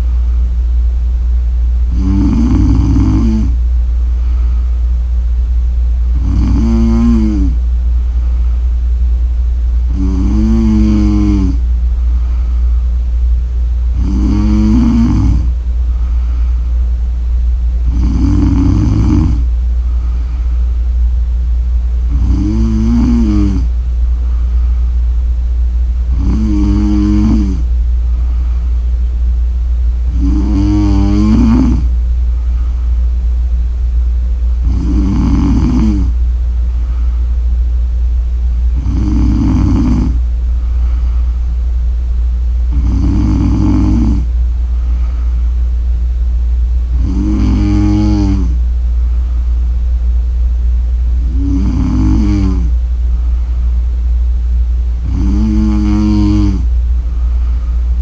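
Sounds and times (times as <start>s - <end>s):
steady low hum: 0.0s - 58.0s
woman snoring: 1.9s - 3.6s, 6.1s - 7.6s, 9.9s - 11.6s, 13.9s - 15.6s, 17.8s - 19.5s, 22.1s - 23.8s, 26.1s - 28.3s, 30.1s - 31.9s, 34.6s - 36.2s, 38.7s - 40.2s, 42.7s - 44.3s, 46.9s - 48.6s, 51.2s - 52.8s, 55.0s - 56.7s.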